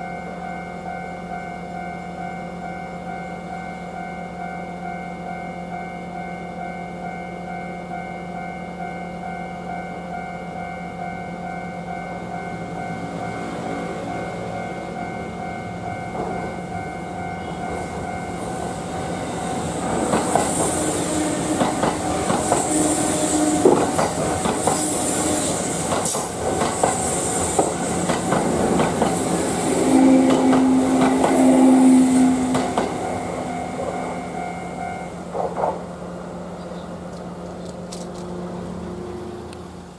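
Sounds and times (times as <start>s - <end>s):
crossing warning bell ringing: 0.0s - 26.4s, 27.1s - 35.3s
train wheels clacking on rails: 14.4s - 35.9s.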